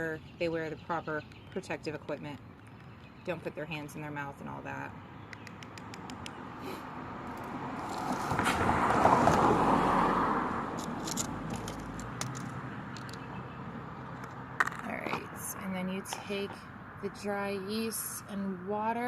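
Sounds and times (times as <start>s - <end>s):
car passing by: 7.0s - 14.6s.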